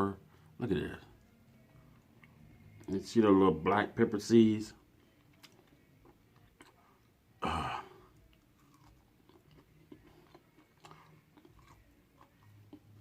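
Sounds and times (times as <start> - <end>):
person chewing fried food: 4.9 - 7.2, 8.0 - 13.0
crunch of food: 8.2 - 13.0.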